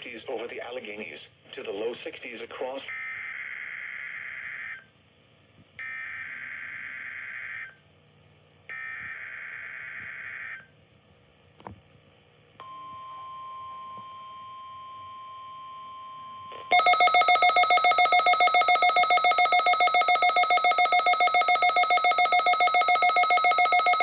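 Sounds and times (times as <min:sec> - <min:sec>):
steady weather alert tone: 0:16.7 - 0:24.0.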